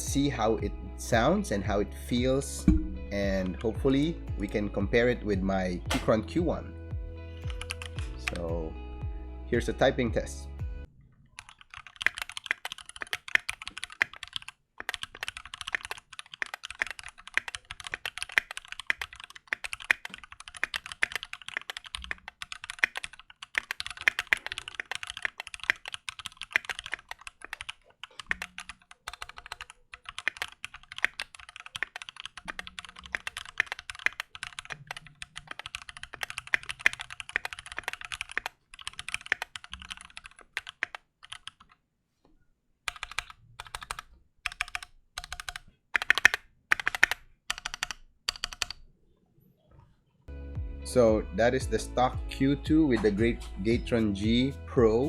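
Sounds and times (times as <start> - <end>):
mechanical keyboard typing: 7.4 - 8.5, 11.4 - 41.8, 42.9 - 48.9.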